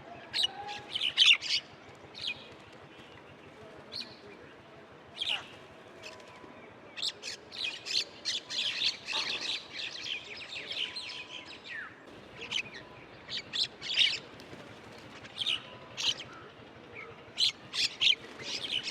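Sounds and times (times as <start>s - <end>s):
birds chirping: 5.2s - 18.9s.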